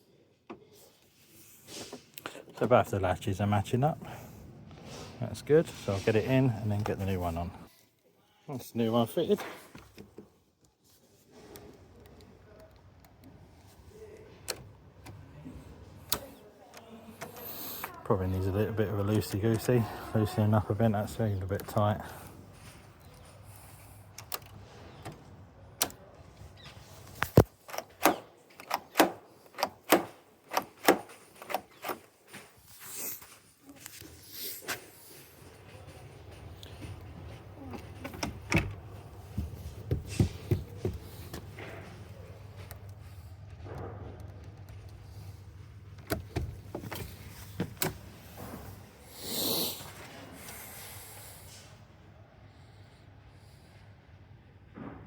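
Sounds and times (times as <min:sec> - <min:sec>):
lock and latch clicking: 0:27.2 - 0:32.1.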